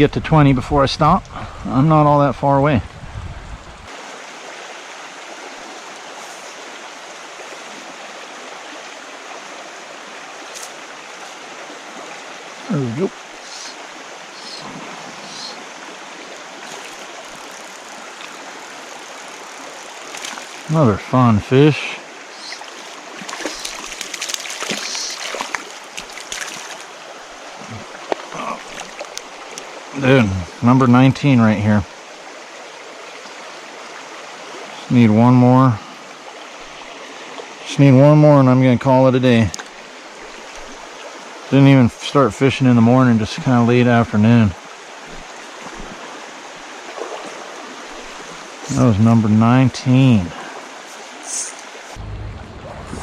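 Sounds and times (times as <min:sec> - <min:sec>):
creek running over rocks: 0:00.0 - 0:53.0
small water splashes: 0:03.9 - 0:21.1, 0:21.8 - 0:30.5, 0:39.5 - 0:41.6, 0:44.5 - 0:48.8.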